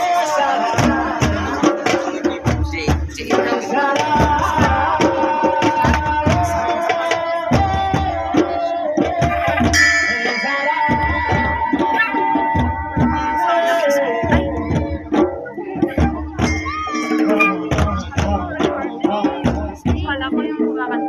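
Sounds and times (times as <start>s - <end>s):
hand drum beat: 0.0s - 21.0s
bright high tones: 9.7s - 12.2s, 16.4s - 18.2s
wavering melody line: 9.7s - 12.2s, 16.3s - 18.8s.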